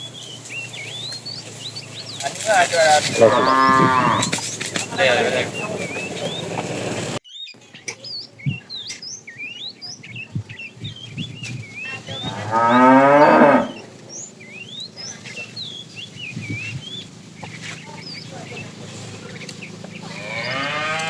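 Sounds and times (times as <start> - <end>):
high chirps: 0.0 - 21.0
cow mooing: 2.1 - 7.2, 11.9 - 15.6, 18.3 - 21.0.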